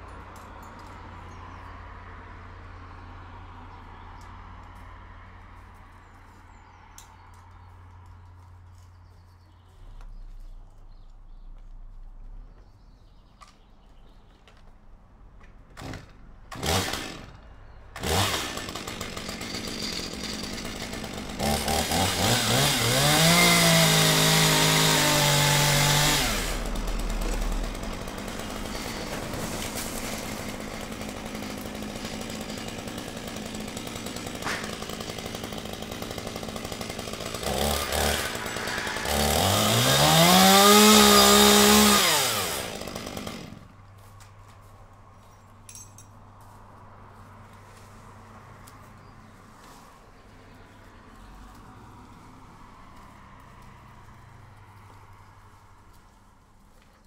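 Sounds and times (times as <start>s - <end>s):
chainsaw engine revving: 15.8s - 17.4s, 18.0s - 43.7s.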